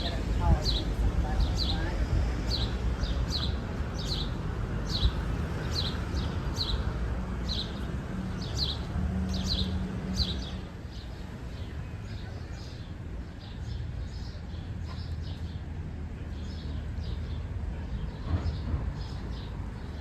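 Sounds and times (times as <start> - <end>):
steady low rumble: 4.9 - 7.2.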